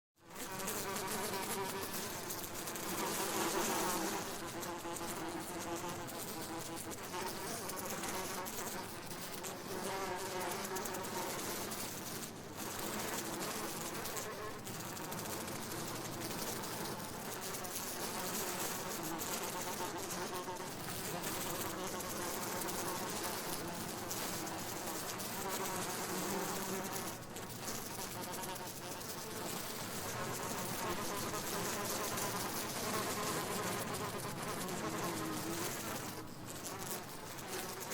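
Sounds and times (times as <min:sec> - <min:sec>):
flies buzzing: 0:00.2 - 0:37.9.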